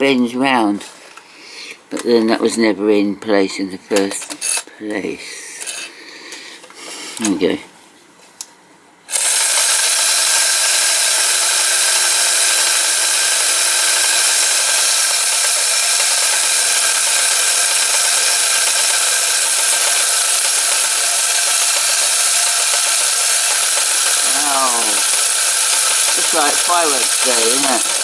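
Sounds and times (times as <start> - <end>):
flint wheel grinding: 9.1 - 28.0
toy motor and gears whirring: 9.1 - 28.0.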